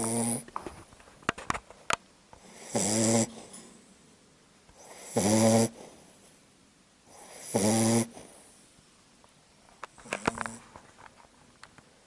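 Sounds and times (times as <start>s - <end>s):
dog snoring: 0.0s - 0.5s, 2.4s - 3.7s, 4.8s - 6.0s, 7.1s - 8.4s, 10.1s - 10.6s.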